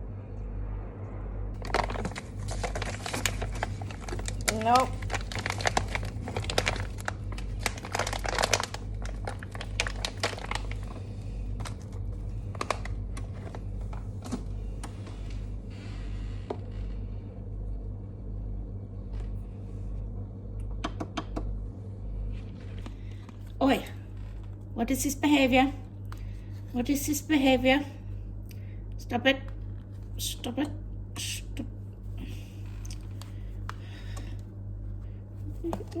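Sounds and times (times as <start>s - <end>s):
steady low hum: 0.0s - 36.0s
crinkling and sharp clicks: 1.6s - 15.4s, 32.2s - 34.5s.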